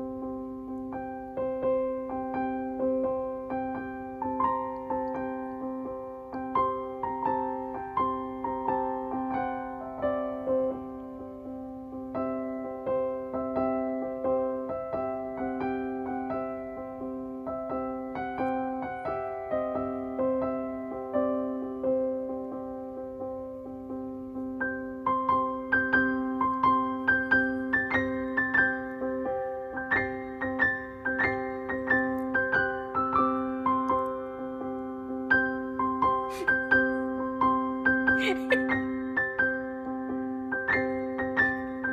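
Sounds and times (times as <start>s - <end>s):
gentle piano music: 0.0s - 41.9s.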